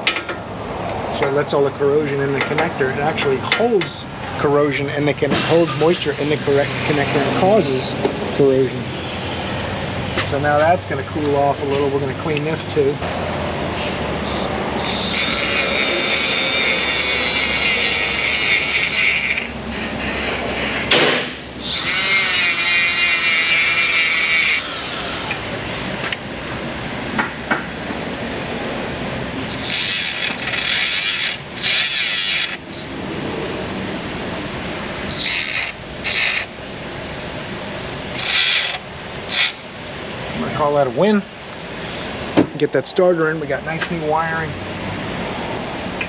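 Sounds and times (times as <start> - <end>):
power tool whining: 14.2 - 19.6, 21.6 - 26.2, 29.4 - 33.0, 35.1 - 36.5, 38.1 - 39.7.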